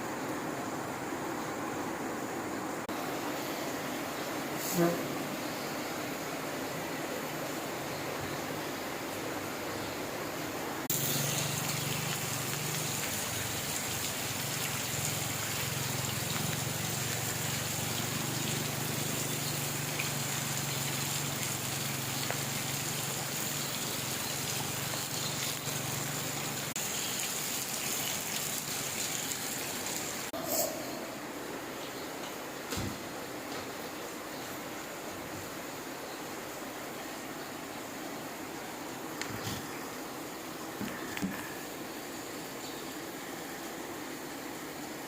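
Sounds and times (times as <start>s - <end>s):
heavy rain pouring: 10.8s - 30.4s.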